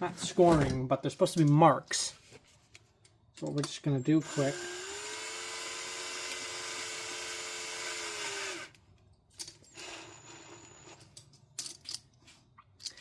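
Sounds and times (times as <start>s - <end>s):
power drill running: 4.2s - 8.8s, 9.7s - 11.0s.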